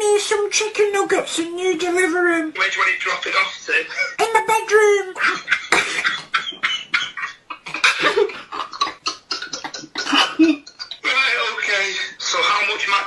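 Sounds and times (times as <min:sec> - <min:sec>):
stifled laughter over phone: 0:05.2 - 0:11.1.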